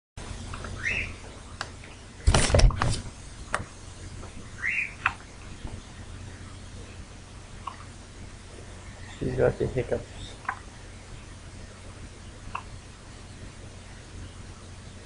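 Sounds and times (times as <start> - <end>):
rustle and thump: 2.2 - 4.4.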